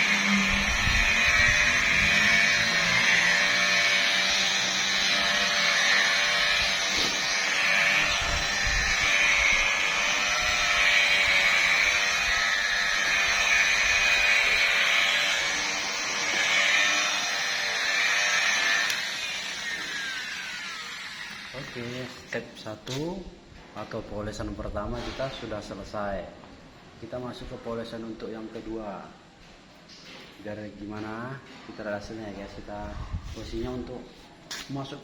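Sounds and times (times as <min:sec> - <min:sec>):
electric car polisher running: 0:00.0 - 0:22.2.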